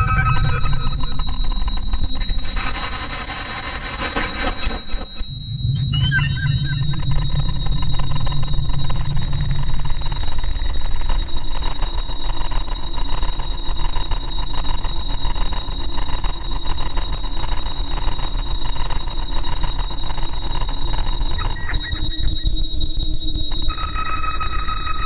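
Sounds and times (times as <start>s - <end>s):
low tone: 0.0s - 2.2s
steady high whine: 0.0s - 25.0s.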